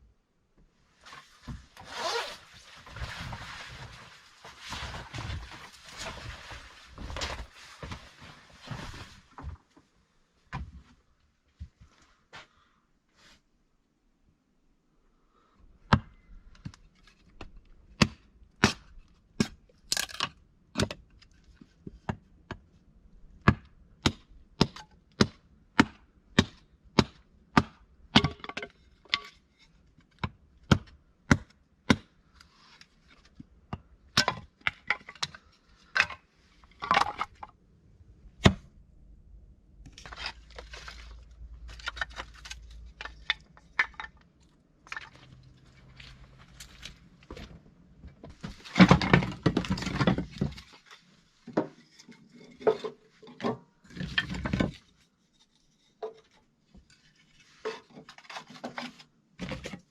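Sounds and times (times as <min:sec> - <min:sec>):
crackling and rustling: 0:01.0 - 0:10.0, 0:39.8 - 0:59.9
wood being chopped: 0:30.7 - 0:32.1.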